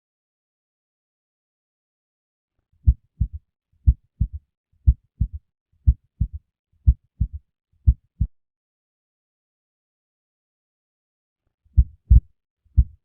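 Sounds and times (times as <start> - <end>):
heartbeat: 2.8 - 8.3, 11.8 - 13.0.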